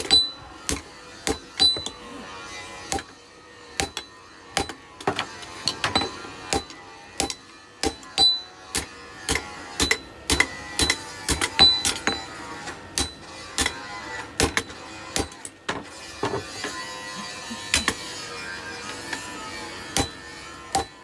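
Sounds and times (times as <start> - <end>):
hand hammer striking metal: 0.0 - 2.2, 2.9 - 3.1, 3.8 - 12.3, 13.0 - 13.8, 14.4 - 15.6, 17.7 - 18.1, 20.0 - 21.0.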